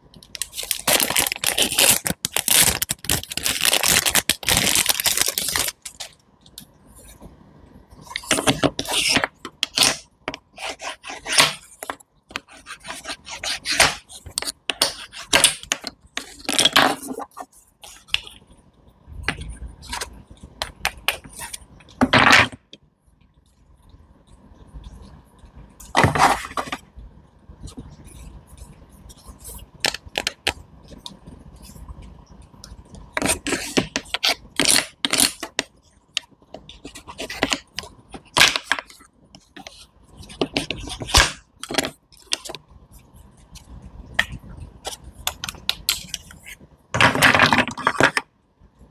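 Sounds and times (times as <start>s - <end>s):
utensil scraping fruit: 8.0s - 18.5s.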